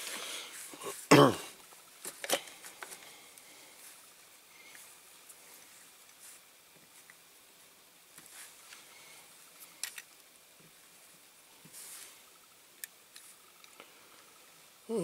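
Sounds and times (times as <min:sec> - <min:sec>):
small plastic parts clicking: 0:09.6 - 0:10.3
soft scrape: 0:11.7 - 0:12.2.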